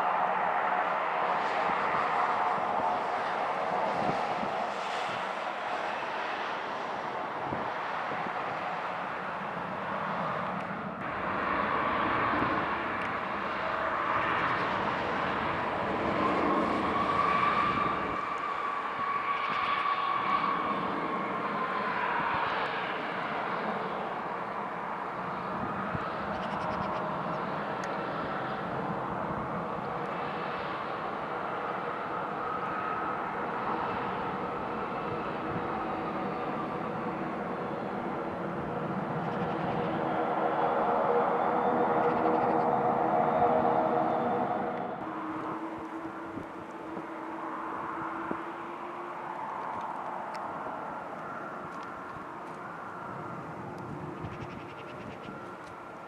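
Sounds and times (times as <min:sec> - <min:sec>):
jet engines whining: 0:00.0 - 0:56.0.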